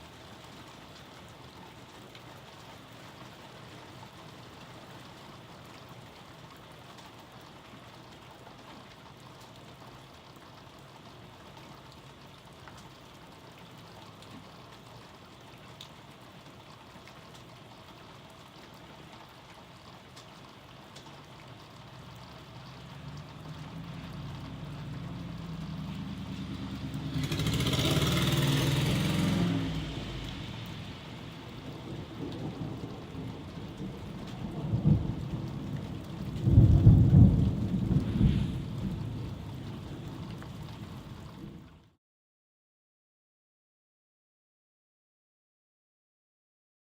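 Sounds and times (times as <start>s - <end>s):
steady rain falling: 0.0s - 42.0s
thunder rumble and crash: 31.5s - 40.2s.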